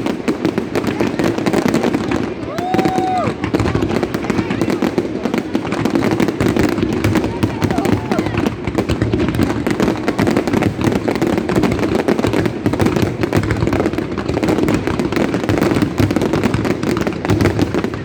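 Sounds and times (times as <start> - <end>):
fireworks bangs and crackles: 0.0 - 18.0.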